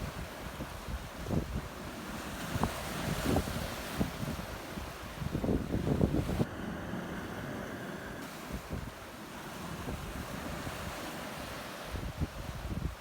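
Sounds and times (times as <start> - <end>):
strong wind gusting on microphone: 0.0 - 9.0, 11.9 - 13.0.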